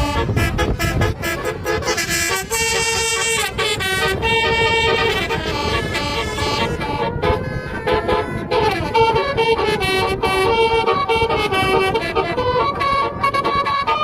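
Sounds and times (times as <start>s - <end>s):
steady low rumble: 0.0s - 13.7s
multi-tone air horn tune: 0.0s - 14.0s.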